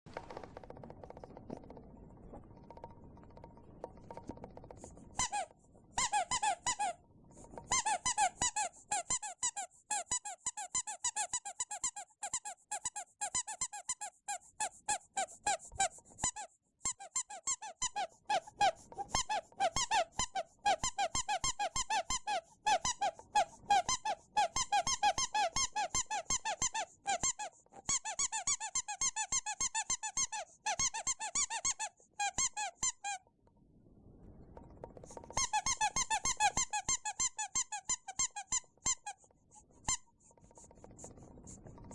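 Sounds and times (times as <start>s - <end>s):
rubber duck squeaking: 5.1s - 7.0s, 7.6s - 33.2s, 35.3s - 40.7s.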